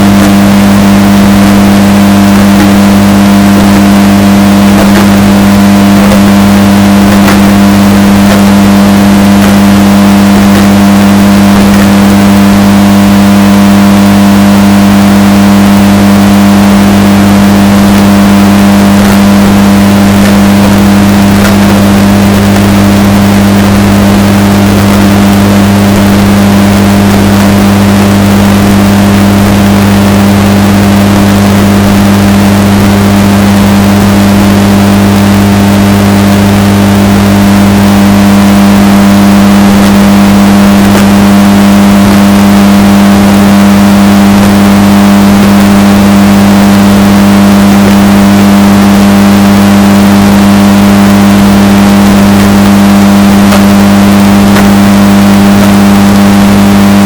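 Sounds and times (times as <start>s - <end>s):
washing machine motor droning: 0.0s - 57.0s.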